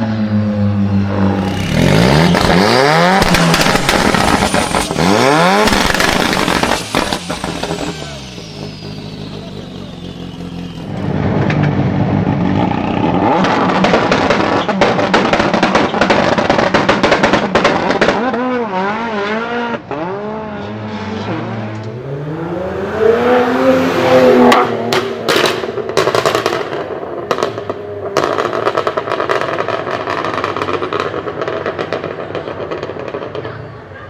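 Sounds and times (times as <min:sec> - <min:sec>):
sports car engine revving: 0:00.4 - 0:29.2
exhaust pops and crackles: 0:02.2 - 0:18.6, 0:24.5 - 0:33.6.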